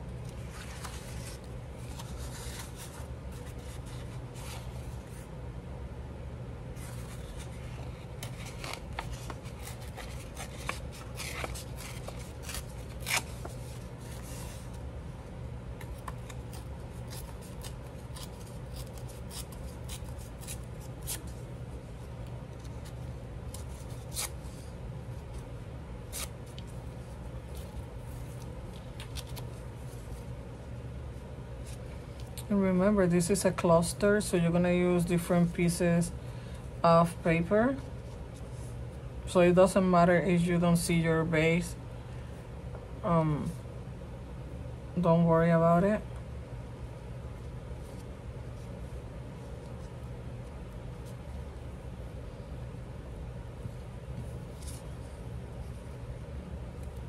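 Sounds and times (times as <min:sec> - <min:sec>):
low steady hum: 0:00.0 - 0:57.0
paper rustling: 0:00.1 - 0:05.3, 0:06.7 - 0:14.8, 0:15.8 - 0:30.3, 0:54.2 - 0:55.9.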